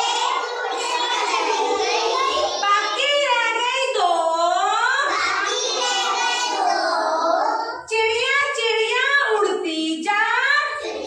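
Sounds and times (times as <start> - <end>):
child singing: 0.0 - 3.0, 5.0 - 7.9.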